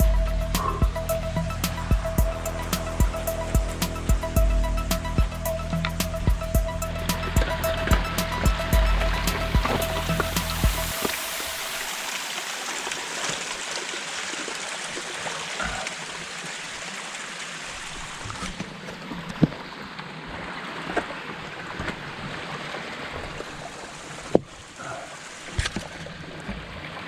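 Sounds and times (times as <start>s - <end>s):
background music: 0.0s - 12.3s
steady rush like flowing water: 0.0s - 27.0s.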